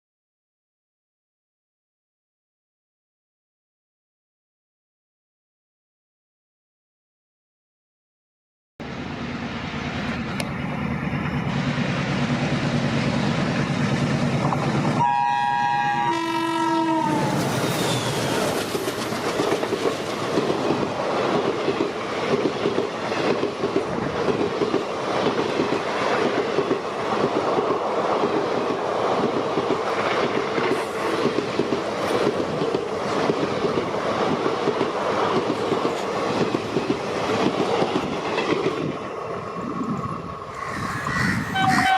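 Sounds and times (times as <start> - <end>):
diesel locomotive engine hum: 8.8 - 41.9
train wheels clickety-clack: 10.1 - 15.0, 17.3 - 40.1
locomotive horn: 15.0 - 17.4, 41.5 - 41.9.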